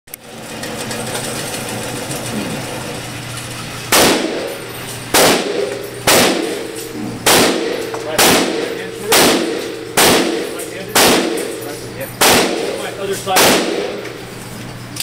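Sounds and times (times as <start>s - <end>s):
steady background hum: 0.2s - 15.0s
pistol shots with echo: 3.9s - 11.6s, 12.2s - 14.0s.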